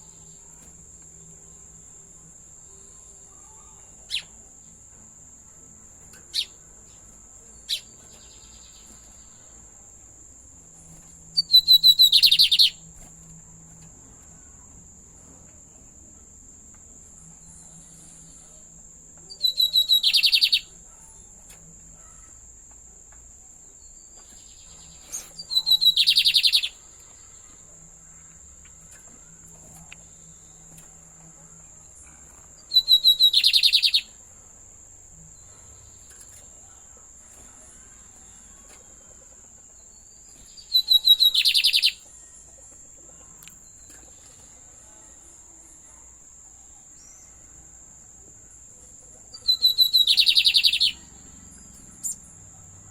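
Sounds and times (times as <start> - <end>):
bird singing: 0.0 - 15.0, 16.6 - 22.9, 23.6 - 52.9
bird chirps: 3.4 - 4.5, 6.2 - 9.5, 11.3 - 12.9, 19.2 - 21.2, 23.8 - 30.9, 32.0 - 34.2, 39.7 - 42.5, 48.4 - 52.7.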